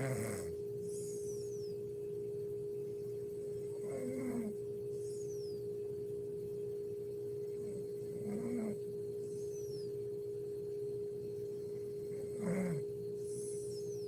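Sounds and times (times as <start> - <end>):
woman snoring: 0.0 - 1.3, 3.6 - 4.6, 7.5 - 8.8, 12.0 - 13.8
steady hum: 0.0 - 14.0.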